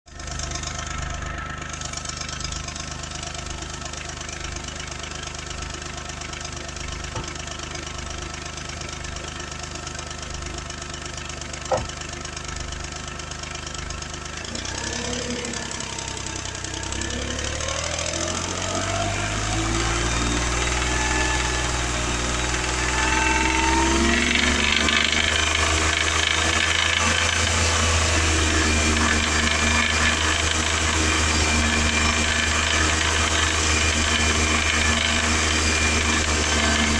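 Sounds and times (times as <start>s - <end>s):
car engine idling and revving: 0.1s - 36.9s.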